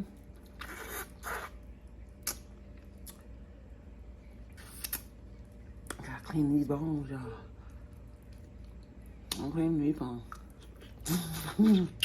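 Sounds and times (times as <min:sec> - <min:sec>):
wet chewing and slurping: 0:00.3 - 0:03.3, 0:04.5 - 0:06.0.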